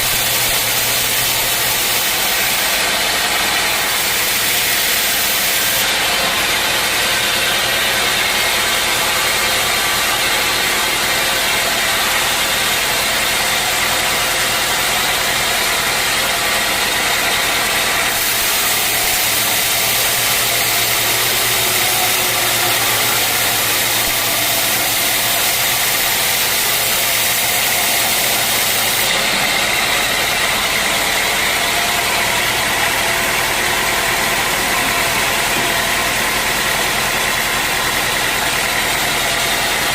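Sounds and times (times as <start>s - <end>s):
engine-like hum: 0.0s - 39.9s
sawmill machinery din: 0.0s - 39.9s
high hiss: 18.2s - 29.1s.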